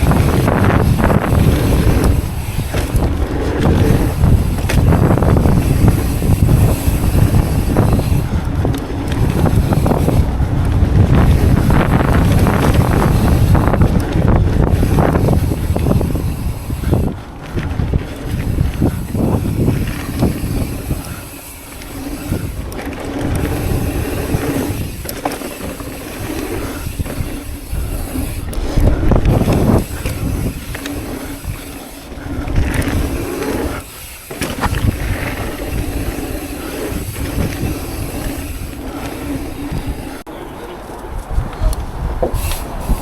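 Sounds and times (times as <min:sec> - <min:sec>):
bike knocks and rattles: 0:00.0 - 0:40.2
bike tyre rumble: 0:00.0 - 0:43.0
wind buffeting microphone: 0:00.0 - 0:43.0.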